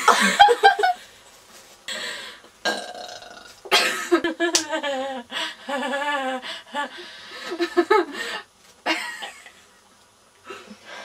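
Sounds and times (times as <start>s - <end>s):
young women laughing: 0.0s - 1.0s, 3.8s - 8.3s.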